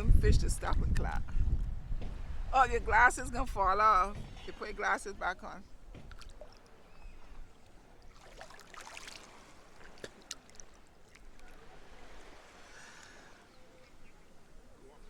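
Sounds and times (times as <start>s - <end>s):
sea water sloshing: 0.0s - 15.0s
small splashes: 5.7s - 14.1s.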